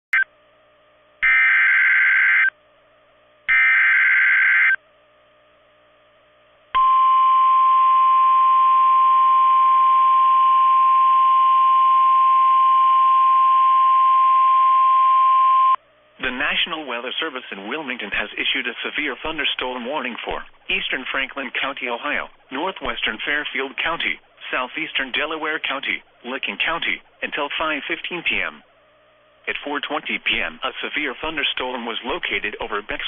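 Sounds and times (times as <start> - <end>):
steady alarm tone: 1.2 - 2.6, 3.5 - 4.8, 6.8 - 15.8
faint radio hiss: 15.8 - 33.0.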